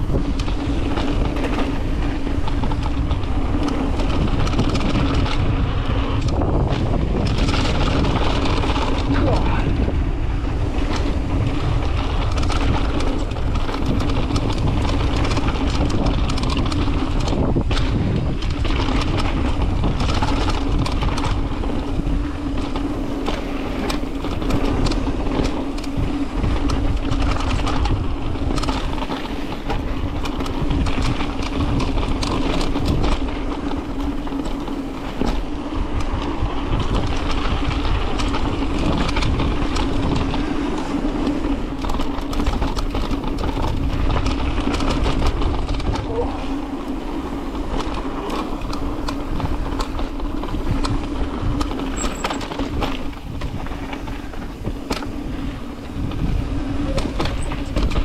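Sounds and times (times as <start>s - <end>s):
bike rattling over bumps: 0.0s - 58.0s
bike tyres on dirt trail: 0.0s - 58.0s
wind on microphone: 0.0s - 58.0s.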